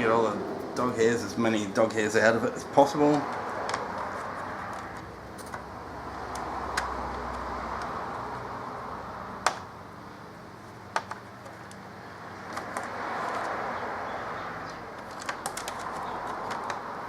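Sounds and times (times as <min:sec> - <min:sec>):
plastic case clicking: 0:10.9 - 0:11.8, 0:15.0 - 0:16.9.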